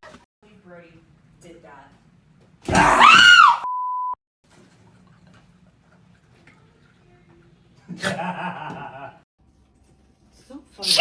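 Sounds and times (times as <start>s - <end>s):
person screaming: 2.7s - 3.6s
censor bleep: 3.6s - 4.2s.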